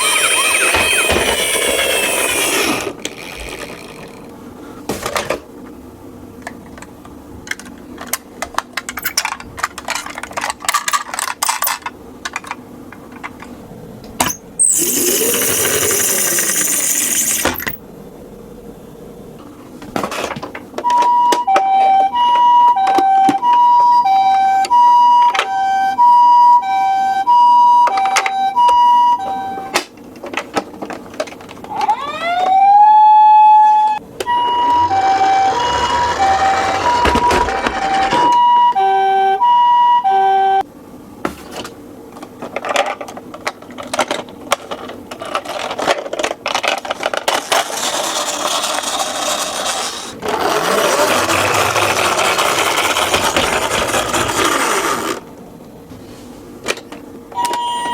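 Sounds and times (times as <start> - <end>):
toy siren two-tone: 0.0 - 1.4, 20.9 - 29.8, 31.7 - 40.6, 57.3 - 57.9
plastic toy clicks and rattles: 43.5 - 55.1.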